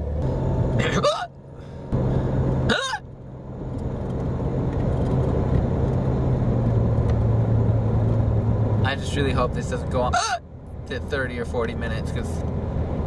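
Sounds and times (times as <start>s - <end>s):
car in motion hum: 0.0s - 13.0s
person hiccuping: 0.8s - 1.4s, 2.7s - 3.0s, 10.1s - 10.4s.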